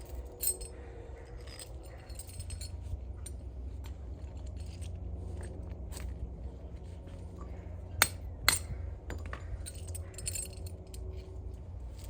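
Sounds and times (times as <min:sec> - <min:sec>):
metal chain clinking: 0:00.0 - 0:03.4, 0:08.0 - 0:12.0
low steady hum: 0:00.0 - 0:12.0.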